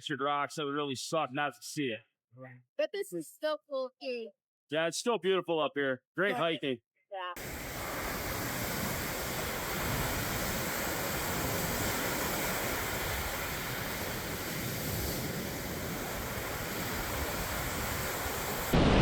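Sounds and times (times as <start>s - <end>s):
surf waves breaking: 7.4s - 19.0s.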